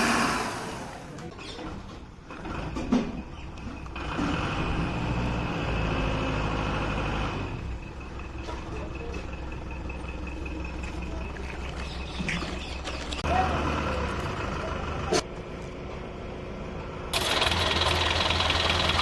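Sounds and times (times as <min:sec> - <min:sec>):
engine running: 0:02.3 - 0:19.0
harsh loud engine: 0:04.0 - 0:11.6, 0:13.2 - 0:15.2, 0:16.3 - 0:19.0.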